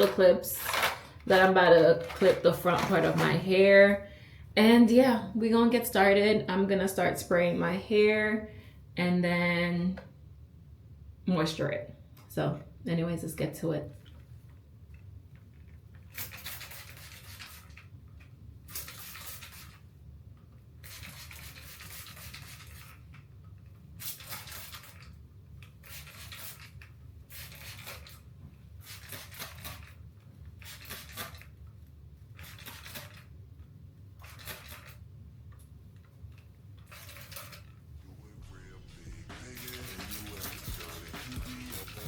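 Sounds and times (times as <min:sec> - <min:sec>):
spray bottle hissing: 0:39.4 - 0:42.0.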